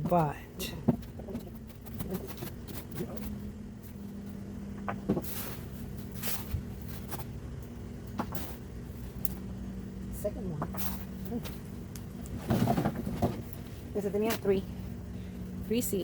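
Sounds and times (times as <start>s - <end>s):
steady low hum: 0.0s - 16.0s
hands digging through soil: 5.2s - 7.3s.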